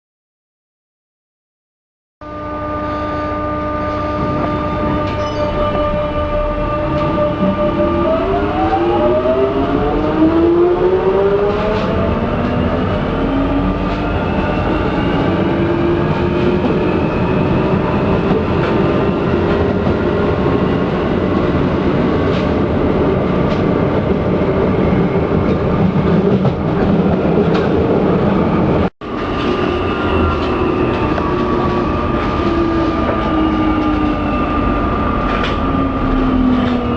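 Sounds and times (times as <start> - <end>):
train traction motor whine: 2.2 - 22.1, 29.1 - 36.9.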